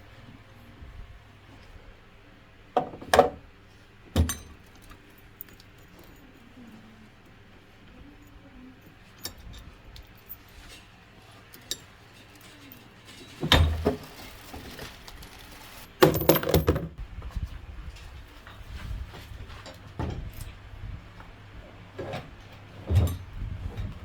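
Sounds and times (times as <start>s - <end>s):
metal tools clinking and clattering: 4.2s - 6.4s, 9.1s - 17.0s.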